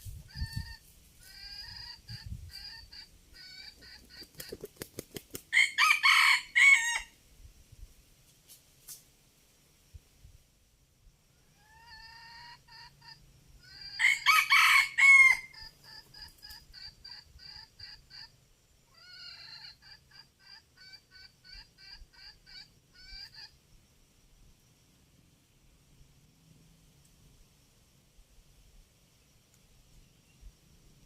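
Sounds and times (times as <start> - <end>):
junglefowl cock crowing: 0.3 - 4.3, 5.5 - 7.2, 11.5 - 18.3, 18.9 - 23.6.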